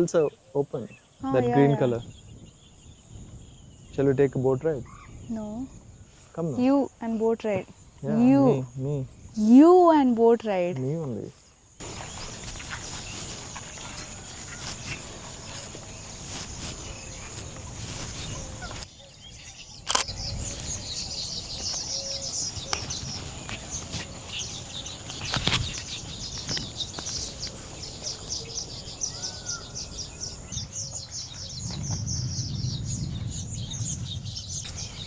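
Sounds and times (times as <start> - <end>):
high-pitched bird chirping: 1.2 - 2.2
low rumble: 31.4 - 35.0.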